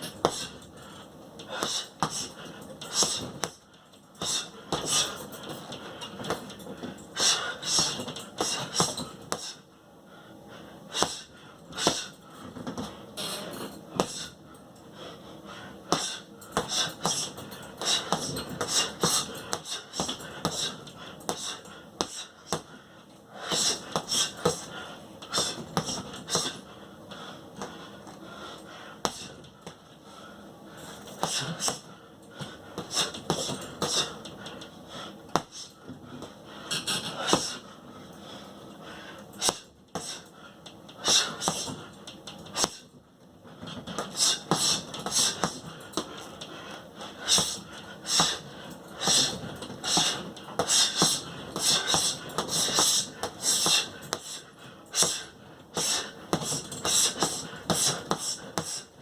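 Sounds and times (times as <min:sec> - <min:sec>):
hissing exhale: 0:47.2 - 0:58.9.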